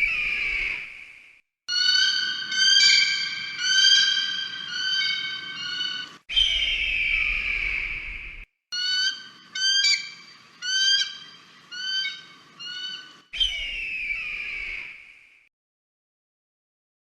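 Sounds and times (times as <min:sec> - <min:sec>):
eagle high piping calls: 0:01.7 - 0:08.1, 0:08.8 - 0:14.9.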